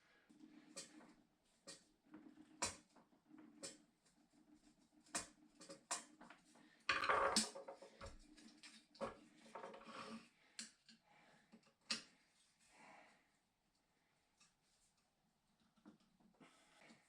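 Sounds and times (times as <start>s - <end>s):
hand tools clicking and scraping: 0.6s - 1.9s.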